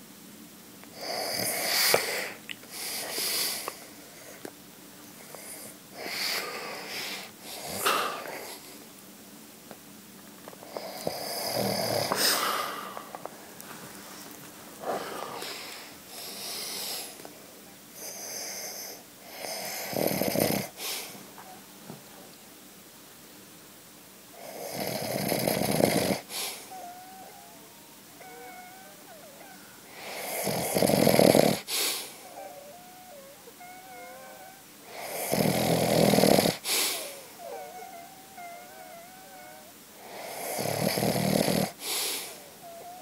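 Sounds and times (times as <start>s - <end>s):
quiet breathing: 0.9s - 8.9s, 10.6s - 20.0s, 26.2s - 30.7s, 31.4s - 35.4s, 36.4s - 40.7s, 41.7s - 43.0s
man snoring: 1.0s - 2.3s, 10.7s - 13.1s, 18.0s - 20.8s, 24.4s - 27.4s, 30.0s - 37.9s, 39.4s - 41.8s.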